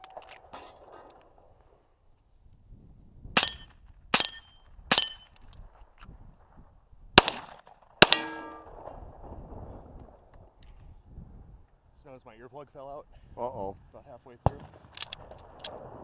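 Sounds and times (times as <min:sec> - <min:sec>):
gunshots: 0:03.4 - 0:05.2, 0:07.2 - 0:09.1, 0:14.4 - 0:16.0
steel targets ringing: 0:08.0 - 0:08.8.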